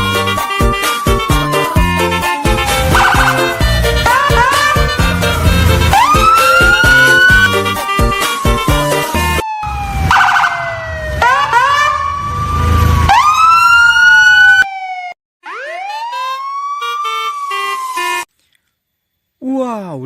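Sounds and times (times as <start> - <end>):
background music: 0.0 - 9.4
wailing siren: 0.0 - 18.3.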